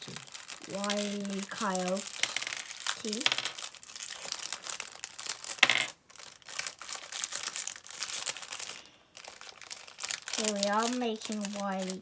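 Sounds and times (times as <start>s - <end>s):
plastic packet crinkling: 0.0s - 12.0s.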